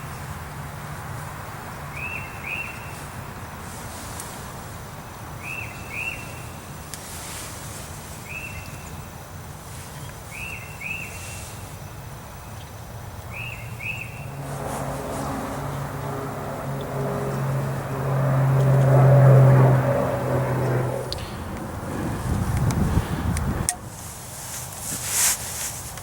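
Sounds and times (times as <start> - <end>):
steady low hum: 13.1 - 24.5
low engine drone: 13.2 - 24.0.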